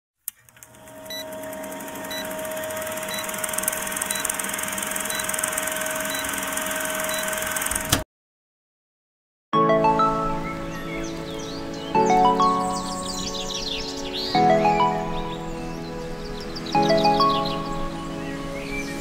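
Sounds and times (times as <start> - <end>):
machinery humming: 0.6 - 8.0.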